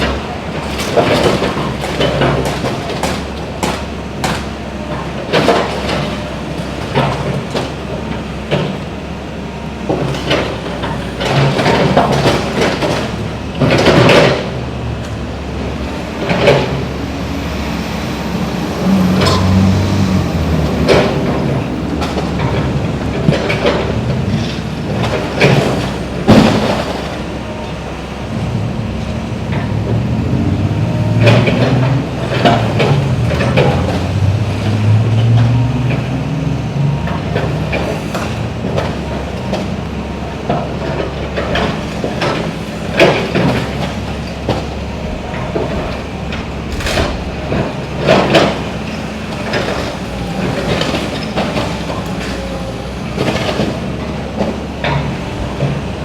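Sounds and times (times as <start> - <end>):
sharp knocks and bangs: 20.8 - 27.4
machine rumble: 40.5 - 56.0.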